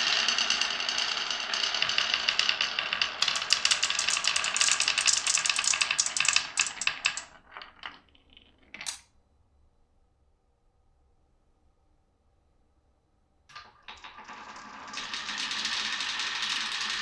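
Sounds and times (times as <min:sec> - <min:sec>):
marbles clattering on wooden run: 0:00.0 - 0:09.0, 0:13.5 - 0:17.0.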